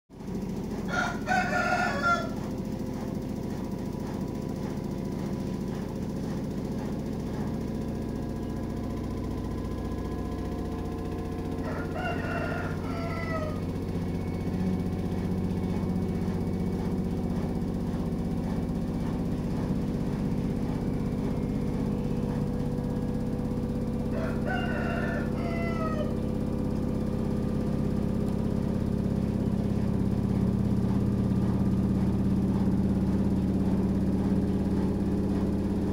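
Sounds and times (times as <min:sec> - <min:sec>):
washing machine humming: 0:00.1 - 0:35.9
rooster crowing: 0:00.7 - 0:02.8, 0:10.2 - 0:17.0, 0:20.9 - 0:27.8.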